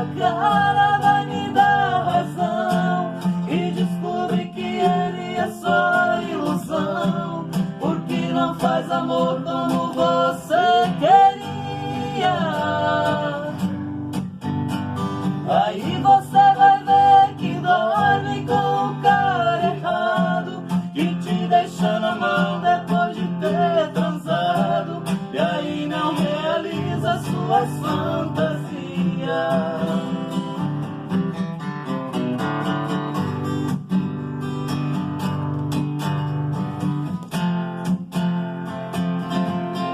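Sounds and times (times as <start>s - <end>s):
person singing: 0.0s - 13.8s, 15.4s - 30.6s
strummed acoustic guitar: 0.0s - 39.9s.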